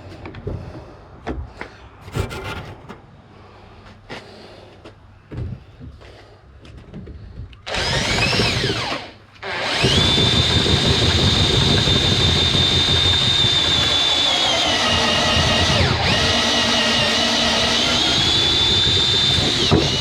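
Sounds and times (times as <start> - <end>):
power tool whining: 7.7 - 20.0.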